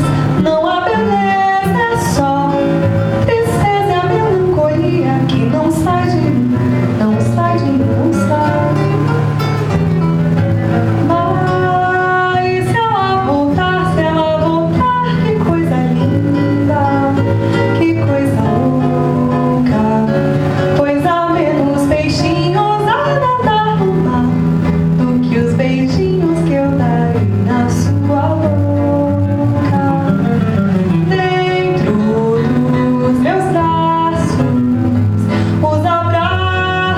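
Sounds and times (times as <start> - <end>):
bossa nova on nylon-string guitar: 0.0 - 36.9.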